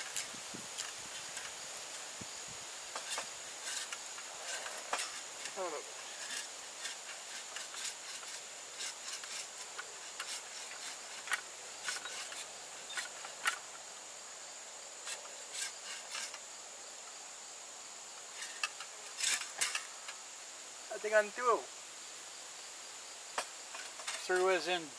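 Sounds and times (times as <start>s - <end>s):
bow saw rasping through wood: 3.0s - 13.1s, 15.1s - 16.4s.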